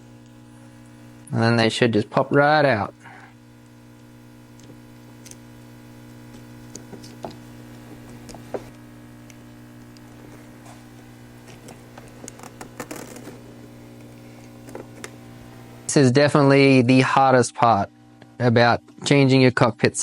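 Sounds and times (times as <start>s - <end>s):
steady low hum: 0.0s - 20.0s
clicks of wire terminals: 3.6s - 15.6s.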